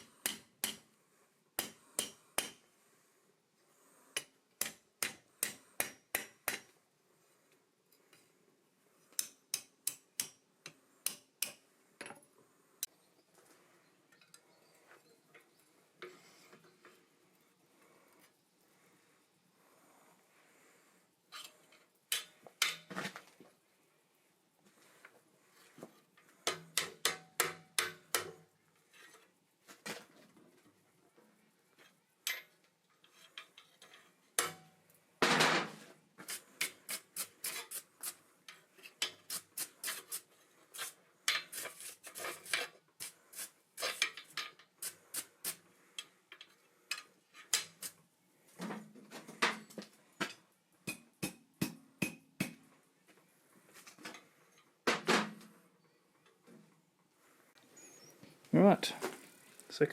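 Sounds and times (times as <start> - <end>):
hammer striking steel on anvil: 0.0 - 0.8, 1.6 - 2.6, 4.2 - 6.7, 50.9 - 52.6.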